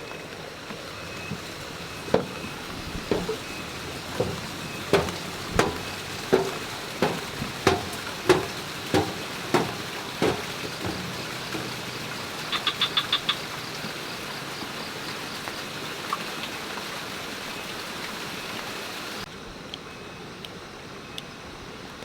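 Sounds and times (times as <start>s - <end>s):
rain hissing: 0.0s - 19.3s
running water: 0.0s - 19.3s
footsteps going down steps: 0.6s - 12.9s.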